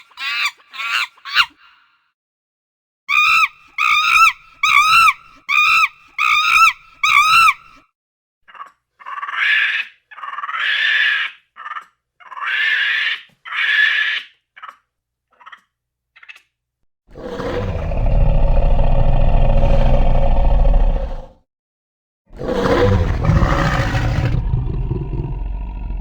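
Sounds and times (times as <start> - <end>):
monkey calls: 0.0 - 1.6, 3.1 - 7.8.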